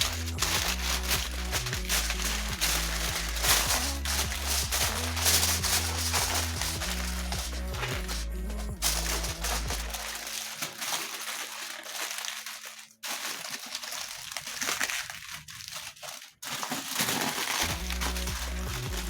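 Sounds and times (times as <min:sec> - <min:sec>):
background music: 0:00.0 - 0:10.5, 0:17.6 - 0:19.0
aluminium foil crinkling: 0:00.0 - 0:19.0.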